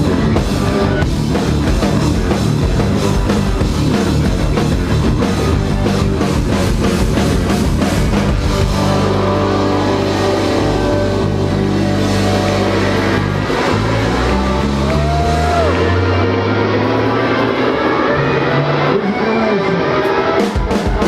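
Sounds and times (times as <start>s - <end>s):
bass guitar: 0.0s - 21.0s
distorted electric guitar: 0.0s - 21.0s
drums: 0.0s - 21.0s.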